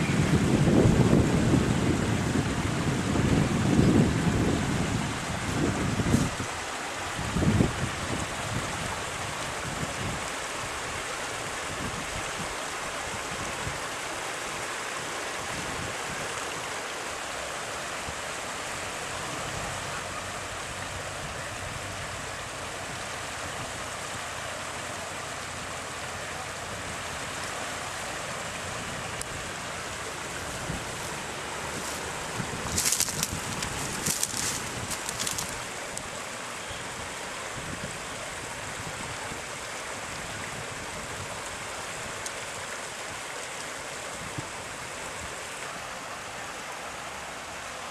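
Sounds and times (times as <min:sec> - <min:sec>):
floodwater rushing: 0:00.0 - 0:47.9
sharp crackles: 0:32.7 - 0:35.6.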